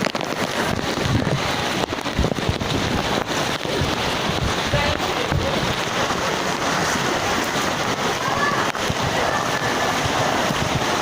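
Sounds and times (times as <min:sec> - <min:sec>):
rain pouring: 0:00.0 - 0:11.0
wind gusting against microphone: 0:00.0 - 0:11.0.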